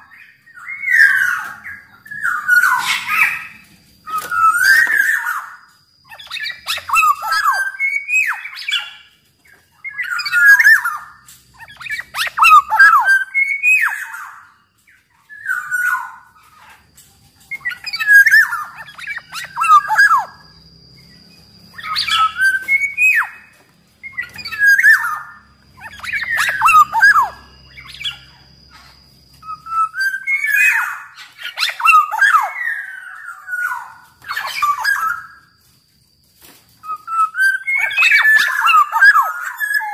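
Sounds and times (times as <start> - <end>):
oriole singing fluty whistles: 17.5 - 21.1, 21.7 - 35.4.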